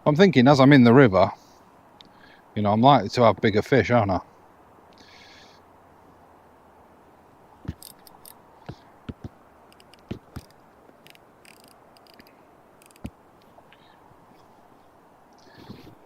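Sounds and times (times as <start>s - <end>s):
soft thumps: 7.6s - 8.0s, 8.6s - 10.5s
faint high clicks: 7.7s - 13.8s.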